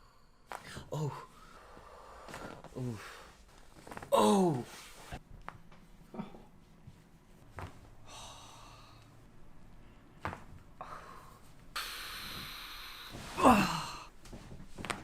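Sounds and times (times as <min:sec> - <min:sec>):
person breathing and sighing: 0:00.0 - 0:03.4, 0:08.0 - 0:09.2, 0:10.8 - 0:14.5.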